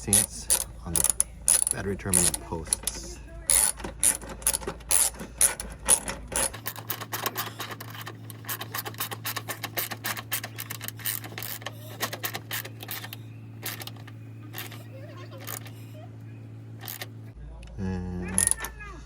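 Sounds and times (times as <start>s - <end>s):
socket ratchet clicking: 0.0s - 14.8s
steady low hum: 0.0s - 19.0s.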